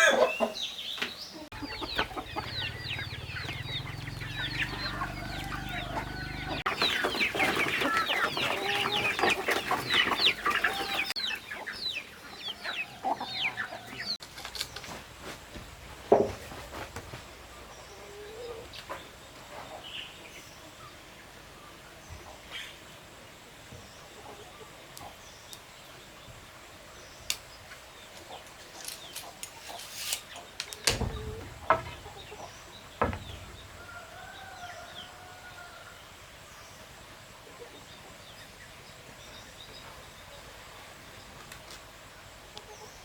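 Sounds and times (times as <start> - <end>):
chickens clucking: 0.0 - 27.0, 27.6 - 43.0
knocks and clicks: 30.6 - 33.8.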